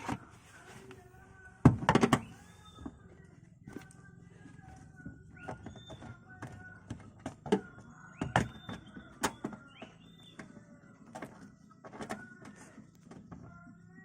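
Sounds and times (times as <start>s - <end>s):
knocks and clicks of car parts: 1.6s - 2.3s, 5.4s - 10.5s.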